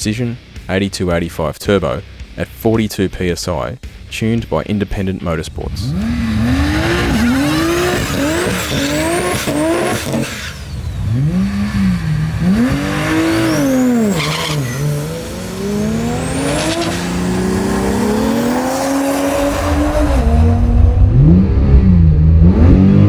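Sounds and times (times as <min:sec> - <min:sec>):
car engine revving hard: 0:05.6 - 0:23.0.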